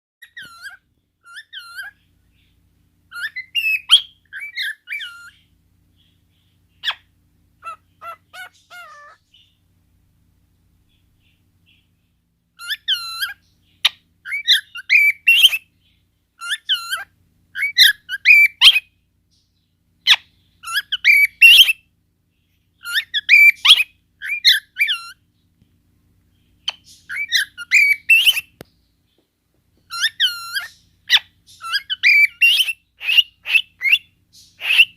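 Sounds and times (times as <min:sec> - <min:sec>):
cockatiel chirping and whistling: 0:00.2 - 0:02.0, 0:03.1 - 0:05.4, 0:06.8 - 0:09.6, 0:12.6 - 0:15.6, 0:16.4 - 0:18.9, 0:20.1 - 0:21.8, 0:22.8 - 0:25.2, 0:26.6 - 0:28.6, 0:29.9 - 0:34.9.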